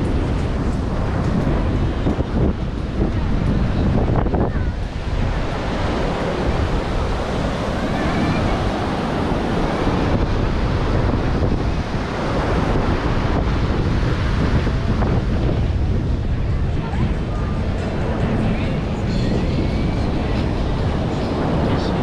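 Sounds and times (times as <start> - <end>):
ocean surf breaking on beach: 0.0 - 22.0
wind rumbling on microphone: 0.0 - 22.0.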